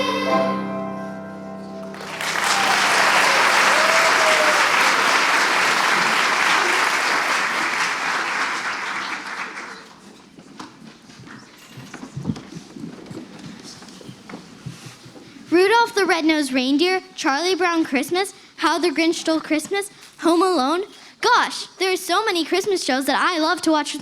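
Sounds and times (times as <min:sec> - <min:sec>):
children's choir singing: 0:00.0 - 0:06.4
audience applauding: 0:01.8 - 0:10.0.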